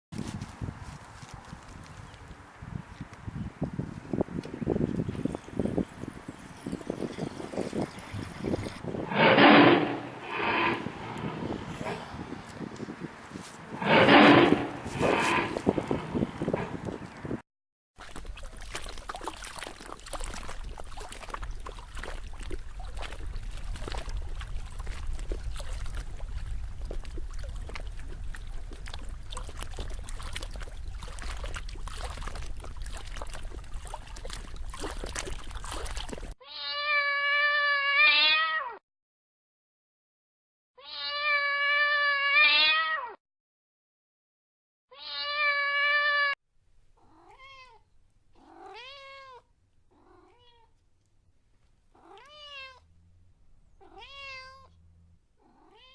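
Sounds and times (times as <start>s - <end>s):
harsh crackly rumbling: 8.3s - 13.1s, 13.7s - 17.2s
cat meowing: 36.4s - 38.8s, 40.8s - 43.2s, 44.9s - 46.4s, 47.0s - 47.8s, 48.4s - 49.4s, 50.0s - 50.7s, 52.0s - 52.8s, 53.8s - 54.7s, 55.4s - 55.9s.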